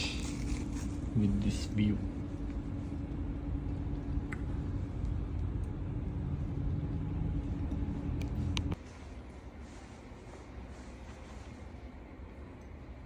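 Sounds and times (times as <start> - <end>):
low hum: 0.0 - 13.0
vehicle engine running: 2.7 - 8.8.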